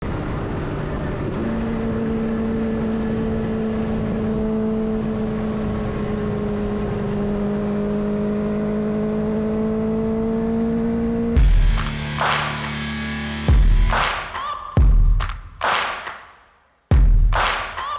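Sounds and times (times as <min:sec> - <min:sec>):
motorcycle engine cruising: 0:00.0 - 0:13.9.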